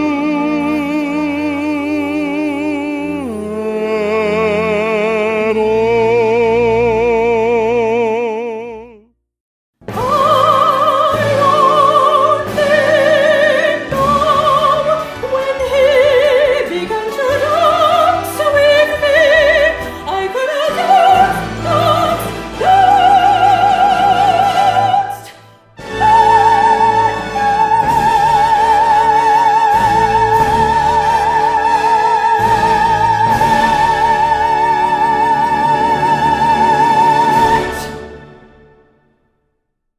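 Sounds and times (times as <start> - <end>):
soprano singing with vibrato: 0.0 - 9.0, 9.9 - 38.2
orchestral accompaniment: 9.8 - 39.3.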